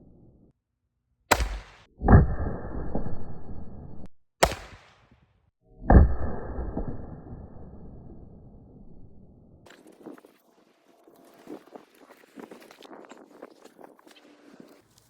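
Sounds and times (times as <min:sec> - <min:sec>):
dull booms: 0:01.3 - 0:01.9, 0:04.4 - 0:05.0
rifle shots: 0:01.3 - 0:01.9, 0:04.4 - 0:05.0.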